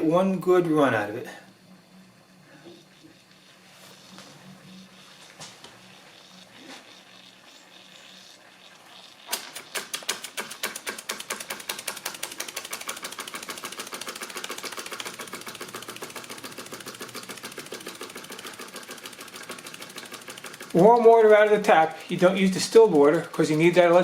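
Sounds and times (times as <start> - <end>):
toy steam engine chuffing: 2.6 - 24.0.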